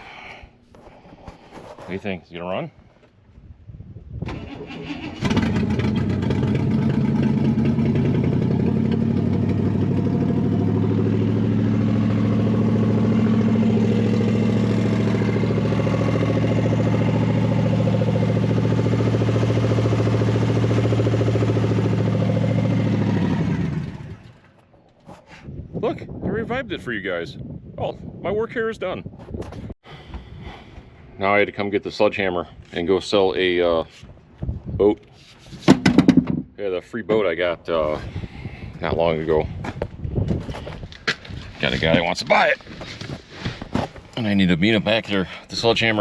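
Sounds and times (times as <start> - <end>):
car engine cranking and running: 4.3 - 24.7.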